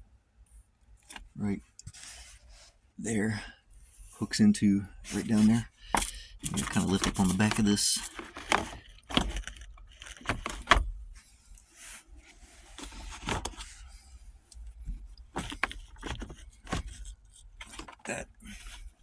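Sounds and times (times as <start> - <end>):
plastic trim clicking and rattling: 5.9 - 10.9.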